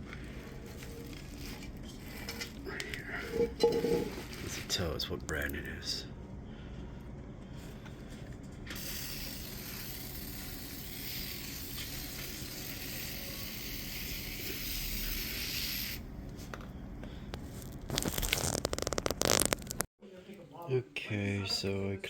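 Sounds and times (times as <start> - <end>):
rapid crackling of plastic: 0.0 - 3.0, 17.4 - 19.9
steady hissing spray: 8.8 - 16.0.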